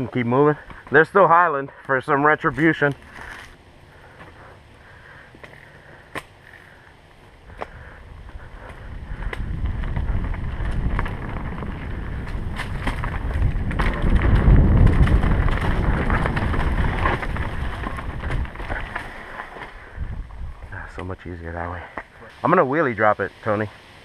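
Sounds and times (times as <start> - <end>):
bike clicks and knocks: 5.3 - 6.7, 7.5 - 19.8
wind buffeting microphone: 7.4 - 20.9.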